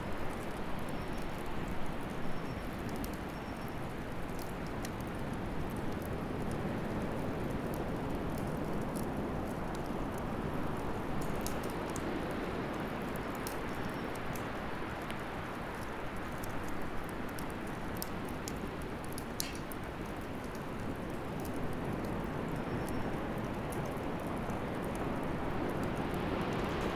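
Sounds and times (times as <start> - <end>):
fire crackling and popping: 4.0 - 22.6.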